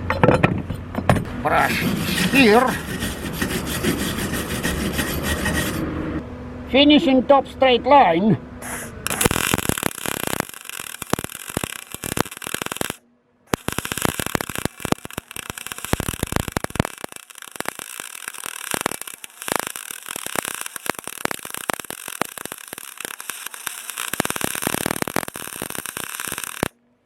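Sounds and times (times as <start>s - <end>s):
welding arc crackling: 8.6s - 26.8s.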